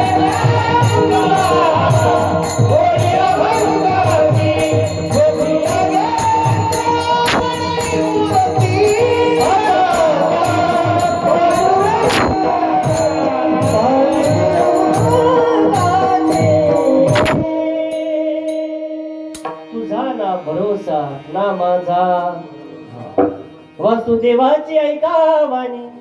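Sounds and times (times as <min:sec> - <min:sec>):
hand drum beat: 0:00.0 - 0:17.5
small hand cymbals chiming: 0:00.0 - 0:19.5
held sliding melody: 0:00.0 - 0:24.0.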